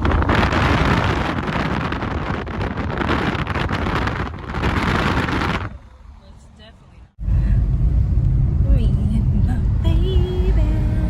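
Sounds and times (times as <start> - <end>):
wind buffeting microphone: 0.0 - 5.9.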